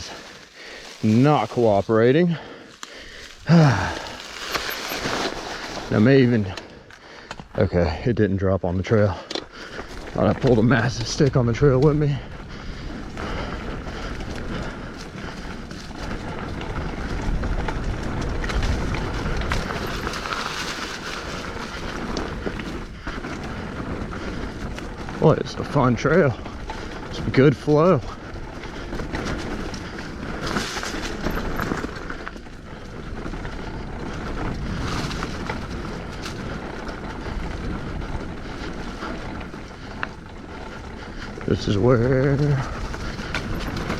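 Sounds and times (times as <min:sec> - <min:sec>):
bike clicks and rattles: 0:00.0 - 0:43.9
bike tyres rumbling over dirt: 0:00.0 - 0:43.9
wind buffeting microphone: 0:09.6 - 0:43.9.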